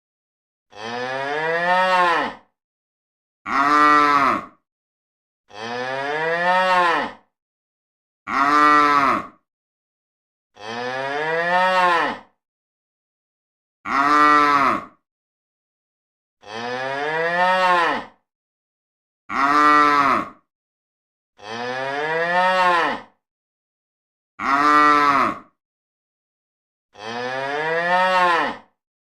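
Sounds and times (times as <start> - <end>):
cow mooing: 0.7 - 2.4, 3.5 - 4.6, 5.5 - 7.2, 8.3 - 9.4, 10.6 - 12.3, 13.9 - 14.9, 16.4 - 18.2, 19.3 - 20.4, 21.4 - 23.1, 24.4 - 25.5, 27.0 - 28.7.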